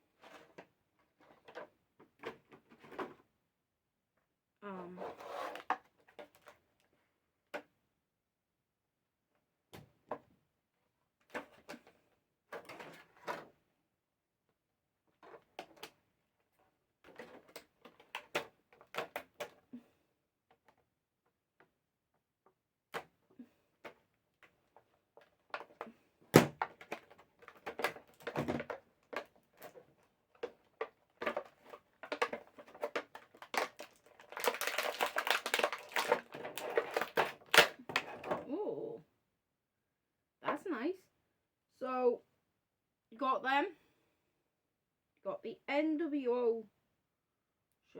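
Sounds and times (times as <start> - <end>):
plastic crinkling and rustling: 26.6 - 38.3
plastic packaging clicks and taps: 30.4 - 38.0.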